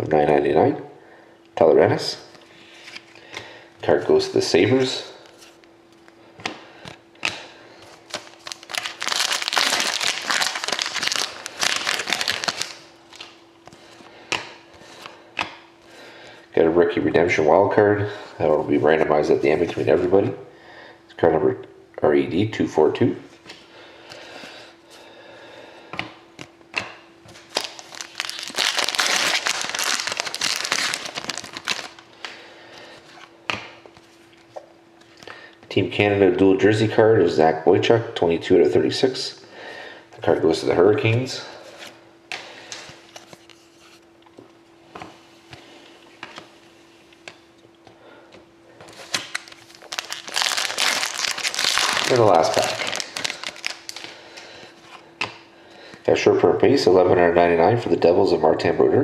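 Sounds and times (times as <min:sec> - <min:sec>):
faint steady hum: 0:00.0 - 0:59.0
card pack wrapper crinkling: 0:07.2 - 0:13.4, 0:27.3 - 0:32.4, 0:48.9 - 0:54.2.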